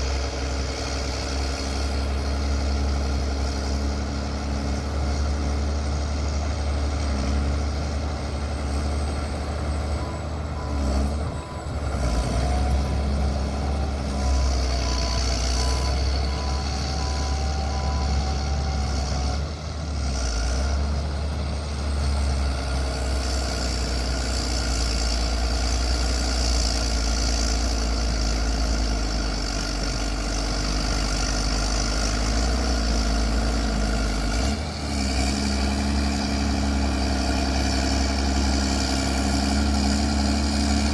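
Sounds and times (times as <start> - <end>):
bulldozer diesel engine: 0.0 - 40.9.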